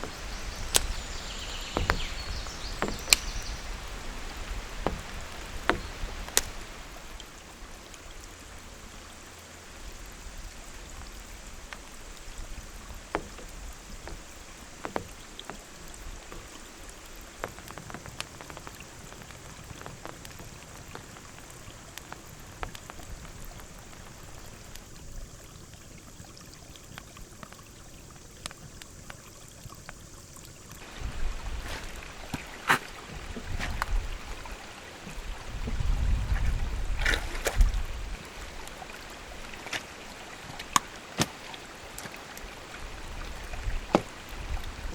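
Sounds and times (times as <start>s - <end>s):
drops tapping close by: 0.0s - 6.7s, 12.8s - 20.4s
flowing river water: 0.0s - 44.9s
steady rain: 0.0s - 44.9s.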